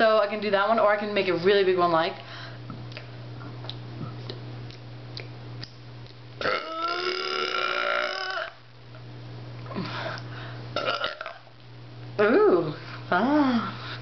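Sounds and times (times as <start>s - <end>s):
person burping: 6.4s - 8.6s, 10.8s - 11.5s.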